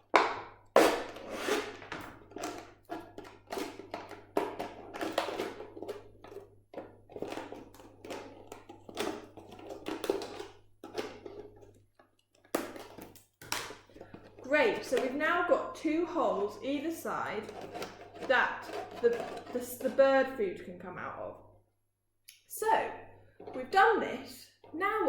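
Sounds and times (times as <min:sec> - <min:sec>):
scissors snipping plastic: 0:00.8 - 0:15.2, 0:16.8 - 0:20.0.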